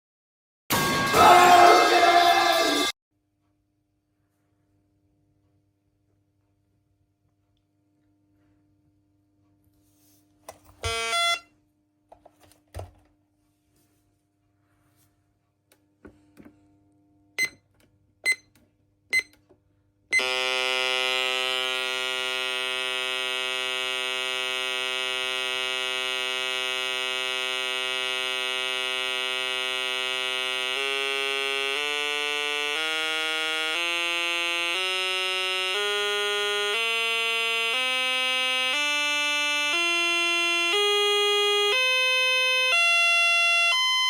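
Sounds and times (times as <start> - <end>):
loud steady electronic alarm tone: 10.8 - 11.4, 20.1 - 44.0
short alarm panel beeps: 17.4 - 17.6, 18.2 - 18.5, 19.1 - 19.4.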